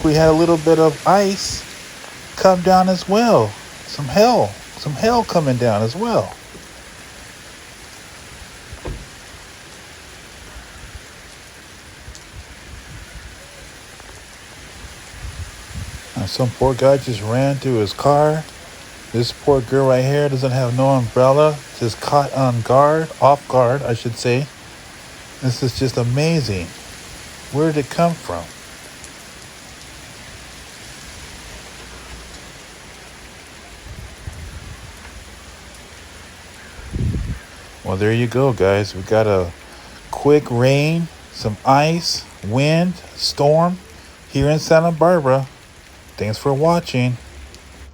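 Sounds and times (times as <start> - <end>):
hail: 0.0 - 47.9
heavy rain pouring: 0.0 - 47.9
low rumbles: 8.5 - 9.5.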